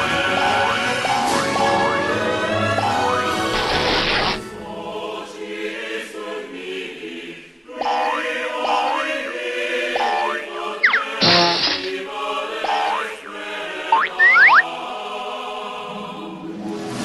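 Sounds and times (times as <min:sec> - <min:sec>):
background music with choir singing: 0:00.0 - 0:17.0
cartoon crash: 0:03.6 - 0:04.4, 0:10.8 - 0:12.0
cartoon falling whistle: 0:10.2 - 0:11.9, 0:14.0 - 0:14.6.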